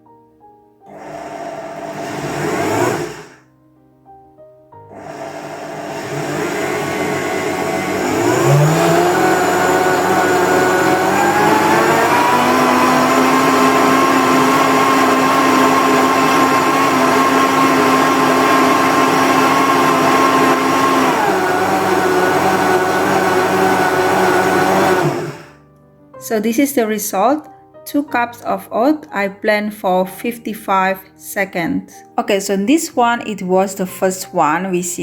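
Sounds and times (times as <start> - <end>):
blender motor whine: 0.9 - 3.4, 4.9 - 25.6.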